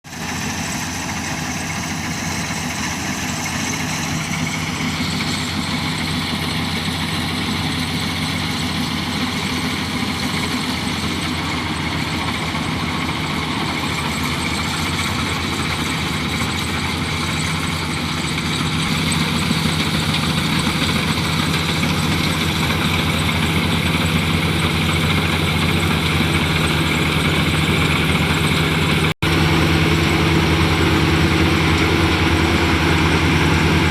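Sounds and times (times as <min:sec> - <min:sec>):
combine harvester engine running: 0:00.1 - 0:33.9.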